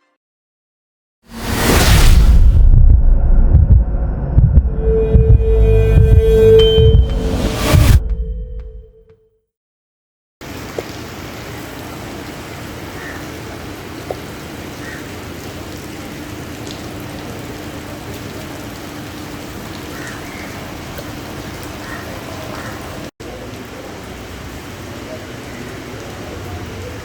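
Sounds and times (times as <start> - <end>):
steady rain falling: 10.4 - 27.0.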